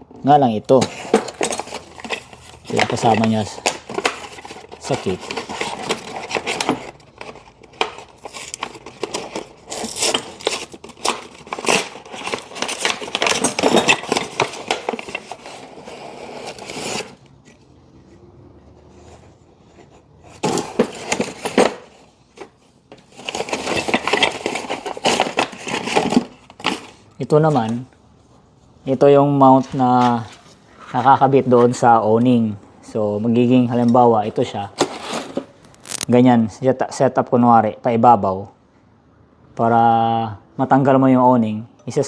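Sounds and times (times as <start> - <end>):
metal parts clinking and scraping: 0.7 - 17.6, 18.9 - 27.8
rustling: 0.7 - 31.9, 33.7 - 36.2.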